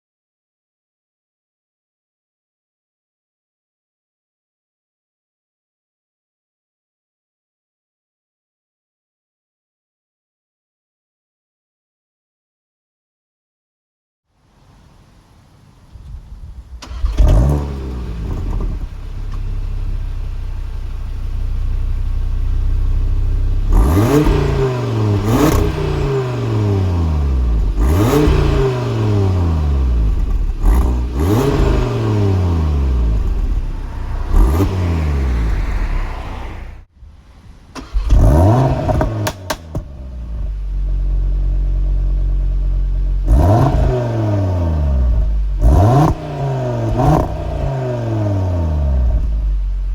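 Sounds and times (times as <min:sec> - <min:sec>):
car engine idling: 0:14.5 - 0:36.9, 0:37.9 - 0:43.6
car engine starting: 0:14.5 - 0:49.9
car engine revving: 0:16.8 - 0:36.9, 0:37.8 - 0:49.9.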